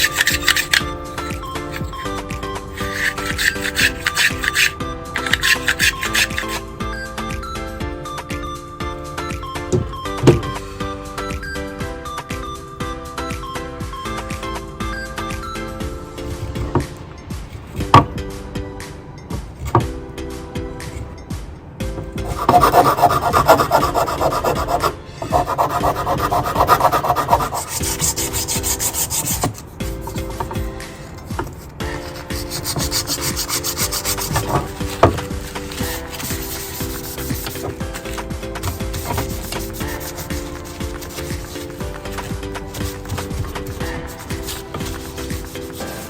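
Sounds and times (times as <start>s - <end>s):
rapid rasping strokes: 0.0s - 6.6s, 22.2s - 30.8s, 31.5s - 46.0s
background music: 0.0s - 46.0s
light high-pitched scraping: 1.6s - 6.6s.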